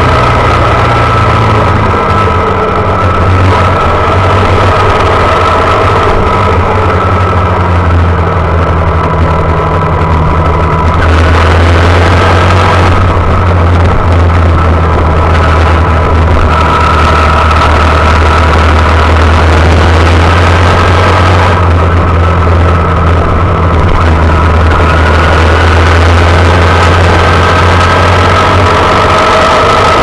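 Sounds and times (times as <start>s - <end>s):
motorcycle engine running: 0.0s - 30.0s
wind noise on camera: 0.0s - 30.0s.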